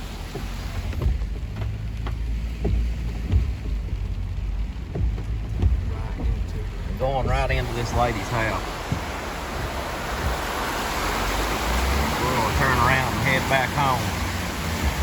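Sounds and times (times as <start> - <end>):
vehicle interior rumble: 0.0 - 15.0
light ticks: 0.2 - 8.0.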